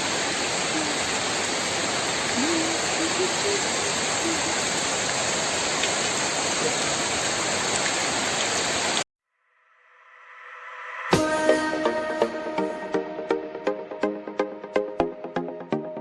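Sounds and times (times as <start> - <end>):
heavy rain falling: 0.0 - 9.0.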